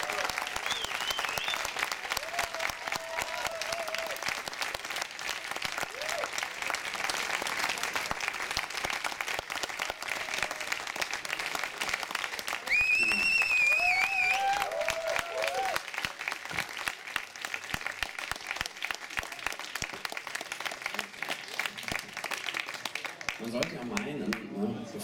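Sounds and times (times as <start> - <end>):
audience applauding: 0.0 - 25.0
loud high whistle: 0.6 - 1.8, 12.7 - 14.7.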